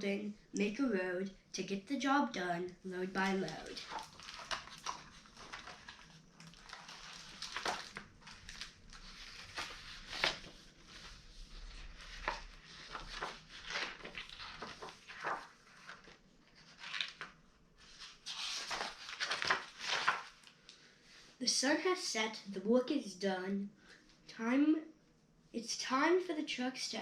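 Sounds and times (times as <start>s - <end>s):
paper rustling and crinkling: 3.1s - 20.6s.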